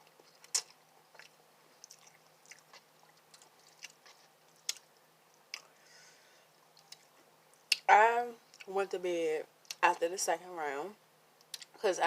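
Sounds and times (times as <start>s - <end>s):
person chewing noodles: 0.0s - 5.8s.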